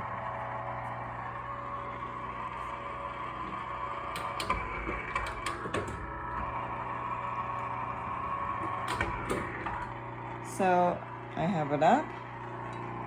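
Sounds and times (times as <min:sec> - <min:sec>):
electric motor humming: 0:00.0 - 0:13.0
sharp clicks and knocks: 0:03.5 - 0:06.5, 0:08.6 - 0:10.0.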